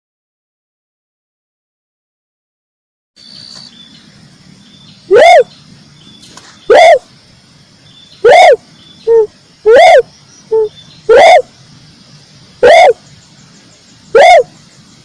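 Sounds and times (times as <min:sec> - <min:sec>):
dove cooing: 0:05.1 - 0:05.5, 0:06.7 - 0:07.1, 0:08.2 - 0:11.5, 0:12.6 - 0:13.0, 0:14.1 - 0:14.5.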